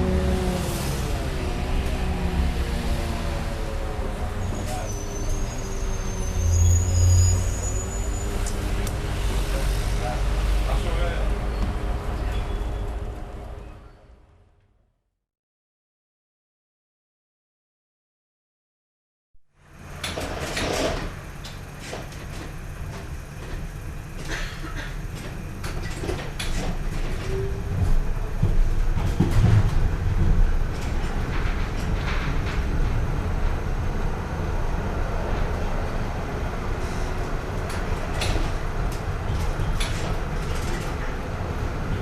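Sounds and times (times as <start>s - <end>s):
train rumbling on rails: 0.0s - 14.5s, 19.6s - 42.0s
clanks and rattles: 20.0s - 34.1s, 36.8s - 42.0s.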